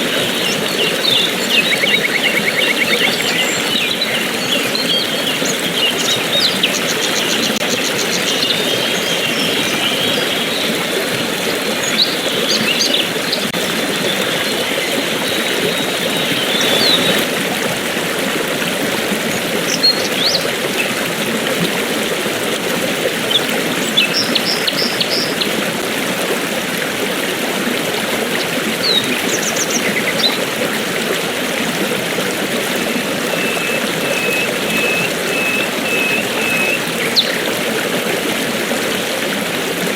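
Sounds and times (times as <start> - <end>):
stream rushing: 0.0 - 39.9
songbirds chirping and trilling: 0.1 - 17.3, 33.3 - 37.6.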